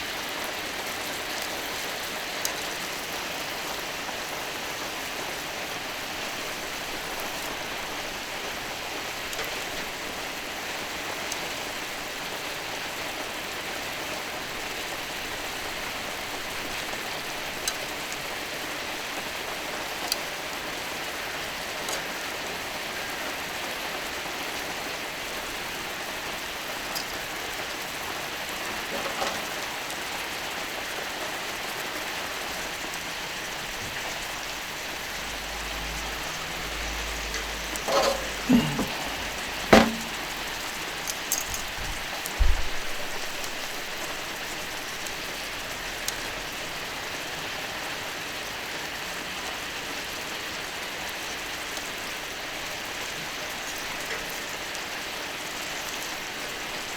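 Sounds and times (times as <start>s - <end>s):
fat spitting pops: 37.8s - 40.2s.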